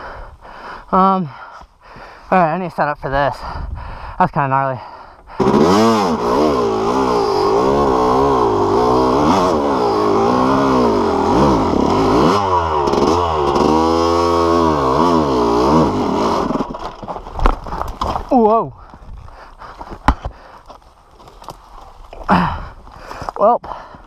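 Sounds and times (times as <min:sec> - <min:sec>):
dirt bike engine revving: 0:05.3 - 0:18.4.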